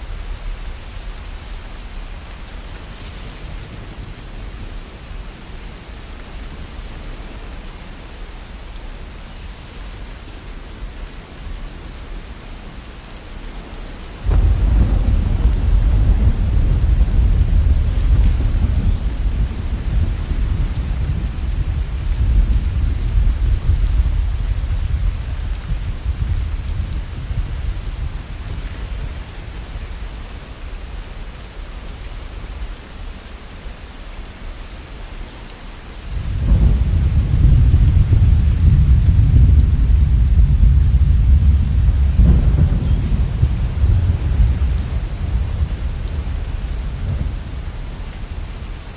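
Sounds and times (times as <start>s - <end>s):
heavy rain falling: 0.0s - 48.9s
thunder rumbling: 14.2s - 30.0s, 36.1s - 48.9s.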